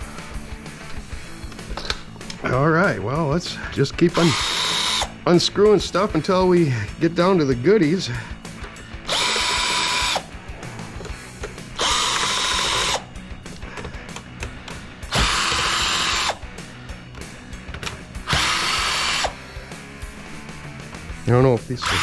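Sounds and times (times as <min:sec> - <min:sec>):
power drill-driver bursts: 0:04.1 - 0:05.2, 0:08.9 - 0:10.4, 0:11.7 - 0:13.2, 0:15.0 - 0:16.5, 0:18.2 - 0:19.6, 0:21.8 - 0:22.0.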